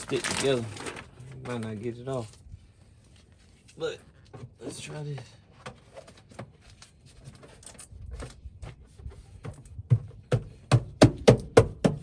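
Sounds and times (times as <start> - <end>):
sharp knocks on sheet metal: 10.3 - 12.0.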